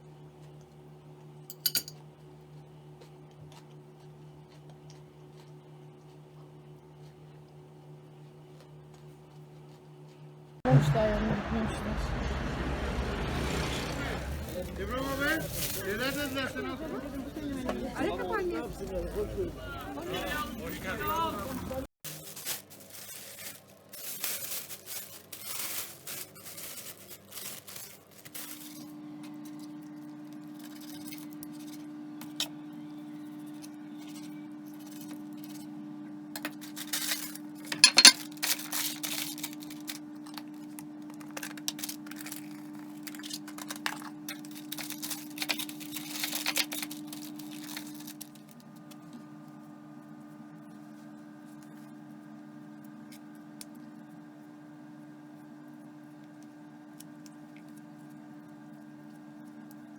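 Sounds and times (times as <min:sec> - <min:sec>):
electrical appliance hum: 0:00.0 - 0:59.9
objects clinking and clattering: 0:01.5 - 0:02.0, 0:36.4 - 0:40.4, 0:41.2 - 0:48.4
rustling and tearing: 0:13.2 - 0:17.2, 0:22.1 - 0:28.9, 0:38.2 - 0:49.2.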